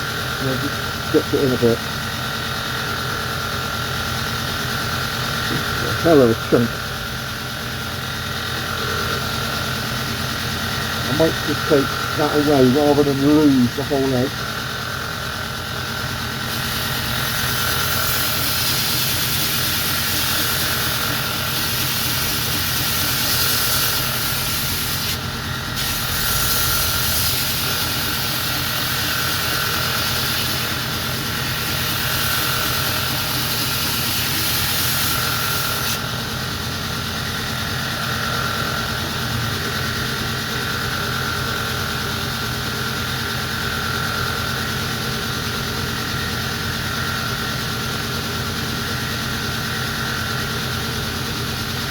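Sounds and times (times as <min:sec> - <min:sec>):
belt grinder motor running: 0:00.0 - 0:51.9
blade grinding hiss: 0:16.4 - 0:36.0.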